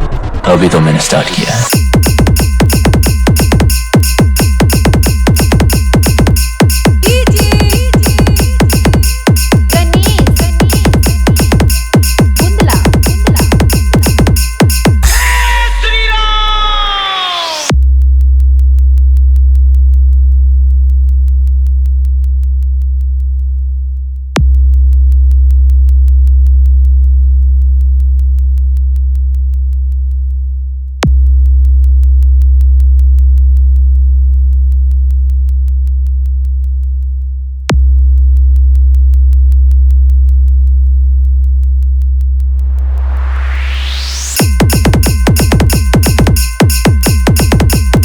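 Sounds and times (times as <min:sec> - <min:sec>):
sub-bass notes: 0:00.0 - 0:16.9, 0:17.7 - 0:48.0
rising sweep: 0:42.5 - 0:45.1.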